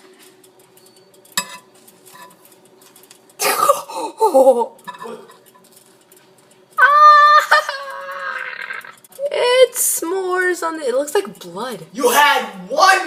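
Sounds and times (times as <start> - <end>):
metal cutlery clinking: 0.1 - 3.5, 4.8 - 6.8
person coughing: 3.4 - 4.2.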